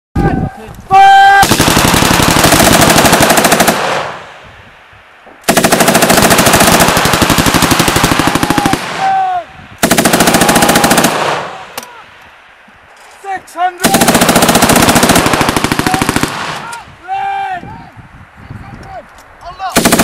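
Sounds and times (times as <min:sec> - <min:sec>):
machine gun automatic fire: 0:01.4 - 0:04.2, 0:05.5 - 0:09.0, 0:09.8 - 0:11.5, 0:13.8 - 0:16.6, 0:19.8 - 0:20.0.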